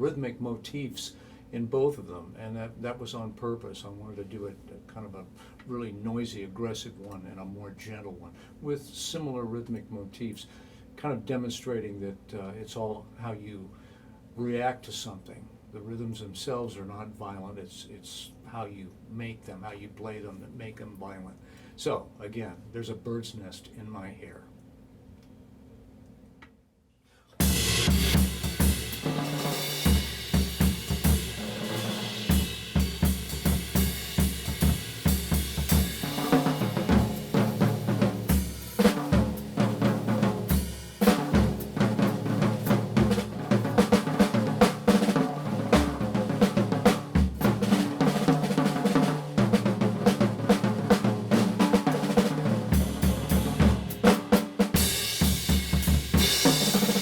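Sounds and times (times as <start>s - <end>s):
drum kit played hard: 27.4s - 57.0s.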